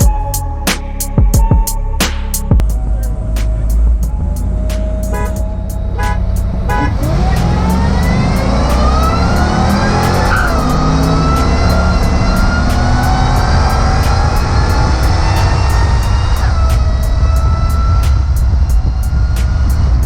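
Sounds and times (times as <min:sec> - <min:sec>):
engines accelerating hard: 0:02.0 - 0:20.0.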